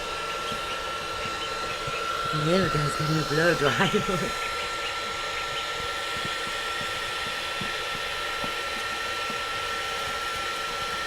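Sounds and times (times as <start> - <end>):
hair dryer running: 0.0 - 11.0.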